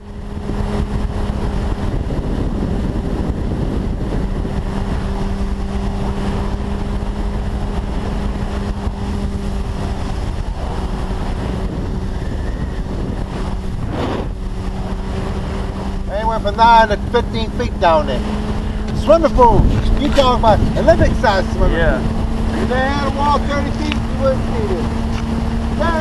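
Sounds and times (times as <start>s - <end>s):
motorcycle engine running: 0.0s - 26.0s
wind noise on microphone: 0.0s - 26.0s.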